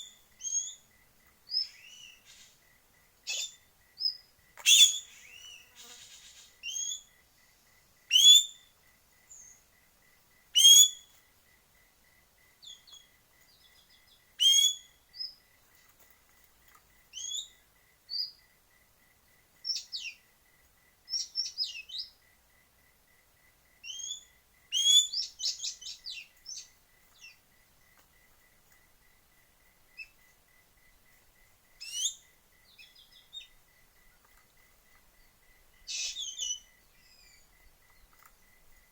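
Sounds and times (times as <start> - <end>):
high upward-sweeping bird calls: 4.7 - 7.0, 35.9 - 37.4.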